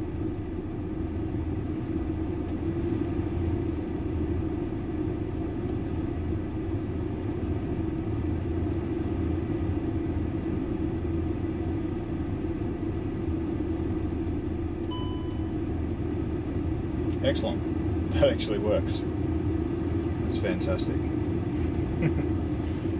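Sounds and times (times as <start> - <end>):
car engine and road noise: 0.0 - 22.9
short electronic beep: 14.9 - 15.6.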